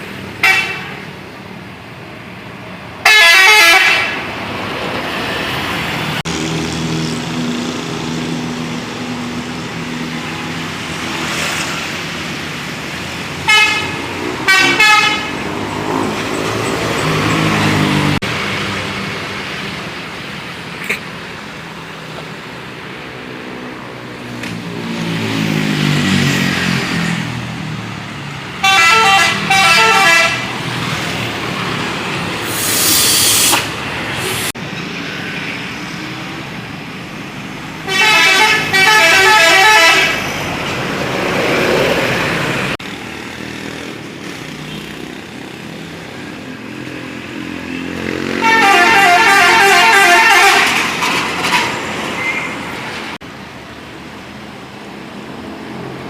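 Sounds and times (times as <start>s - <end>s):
bus engines running: 0.0s - 56.0s
multi-tone musical bus horns: 0.4s - 1.2s, 3.0s - 4.4s, 13.4s - 16.0s, 28.6s - 30.6s, 37.8s - 40.3s, 48.1s - 52.4s
short loud hiss: 32.5s - 34.5s.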